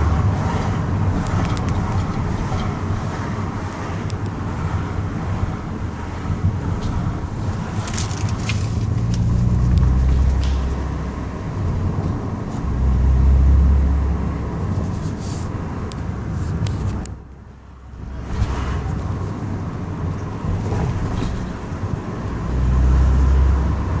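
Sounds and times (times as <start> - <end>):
car road and running noise: 0.0 - 24.0.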